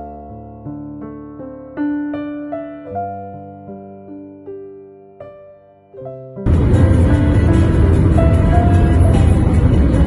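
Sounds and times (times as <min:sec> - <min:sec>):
car driving rumble: 0:06.5 - 0:10.0
faint held music notes: 0:06.5 - 0:10.0.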